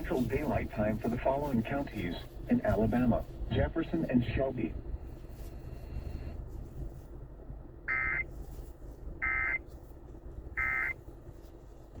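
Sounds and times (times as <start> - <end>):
digital data tone bursts: 7.9 - 8.2, 9.2 - 9.6, 10.6 - 11.0.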